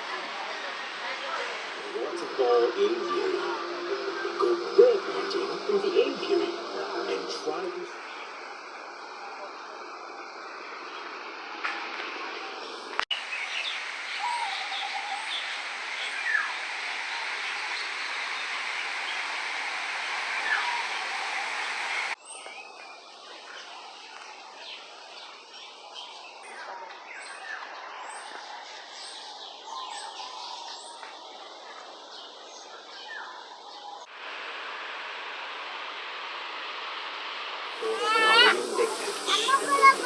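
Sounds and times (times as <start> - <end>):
waterfall rushing: 0.0 - 9.0, 13.1 - 22.2, 34.2 - 40.0
birds chirping and calling: 13.1 - 22.6.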